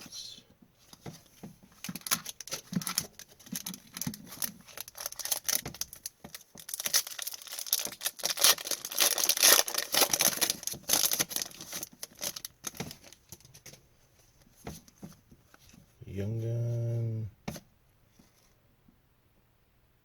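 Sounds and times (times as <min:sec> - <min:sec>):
wrapper tearing and crinkling: 0:01.8 - 0:13.2.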